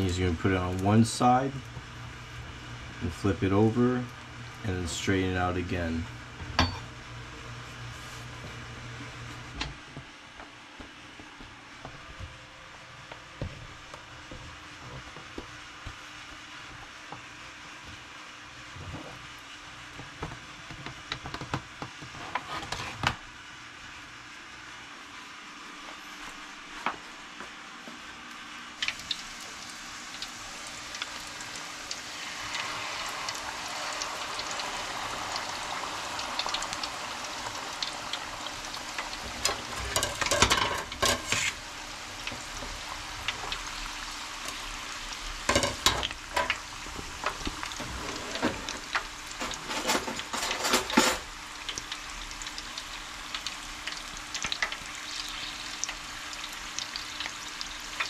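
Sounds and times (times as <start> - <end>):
shrimp frying in hot oil: 28.7 - 58.0
utensils clicking and clattering: 49.4 - 51.3.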